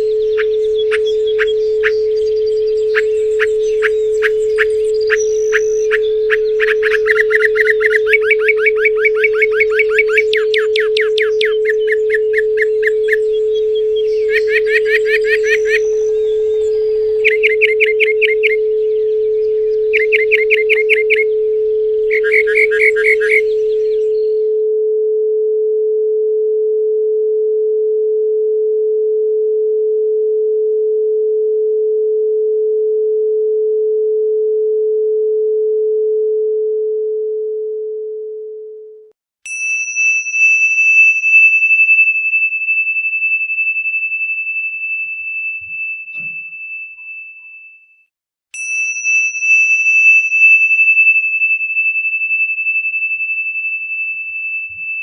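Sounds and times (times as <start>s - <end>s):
high bell-like tone ringing: 0.0s - 24.6s, 39.5s - 48.0s, 48.6s - 55.0s
steady sine tone: 0.0s - 39.0s, 40.9s - 47.9s, 49.3s - 55.0s.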